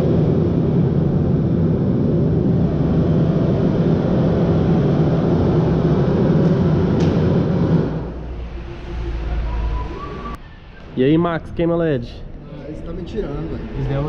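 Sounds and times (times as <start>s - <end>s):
bass-heavy test noise from car speakers: 0.0s - 10.6s.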